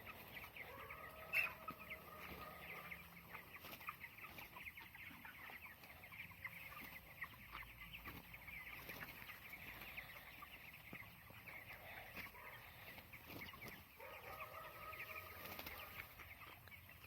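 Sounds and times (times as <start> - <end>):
chickens calling: 0.0 - 17.0.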